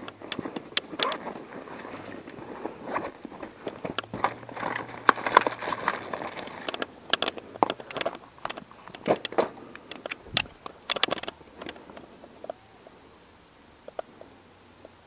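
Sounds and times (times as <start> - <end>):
sharp clicks and knocks: 0.0 - 1.5, 2.2 - 12.6
rustling of gear being handled: 0.0 - 12.1.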